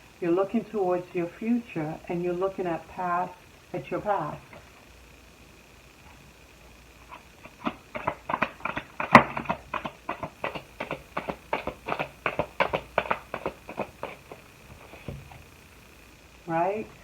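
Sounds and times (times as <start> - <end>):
cards being shuffled: 7.1 - 15.5.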